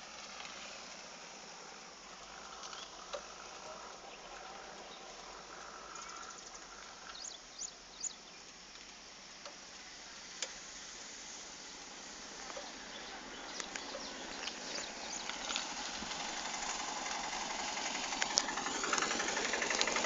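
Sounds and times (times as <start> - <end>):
faint outdoor hiss: 0.0 - 20.0
sharp clicks: 16.5 - 20.0.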